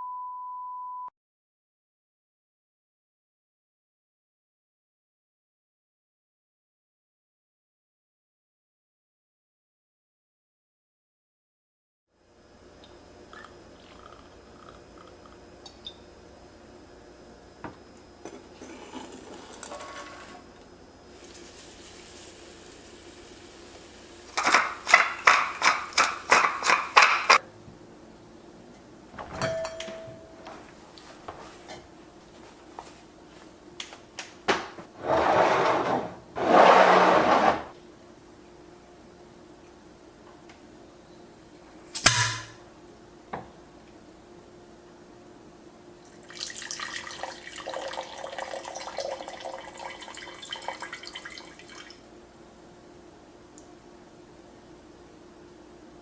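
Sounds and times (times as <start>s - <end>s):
faint steady hum: 12.2s - 34.5s, 37.7s - 56.0s
liquid pouring and splashing: 21.2s - 27.4s, 46.1s - 52.0s.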